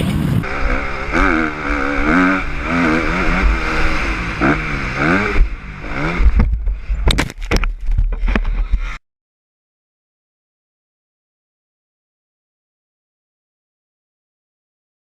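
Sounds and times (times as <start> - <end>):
motorbike engine revving: 0.0 - 7.1
sharp knocks and thumps: 5.3 - 9.0.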